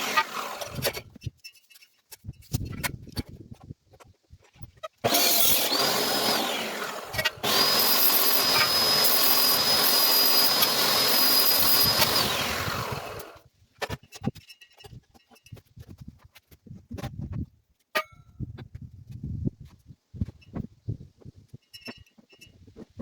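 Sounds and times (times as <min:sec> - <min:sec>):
power tool motor whining: 0:00.0 - 0:01.0, 0:05.0 - 0:13.4.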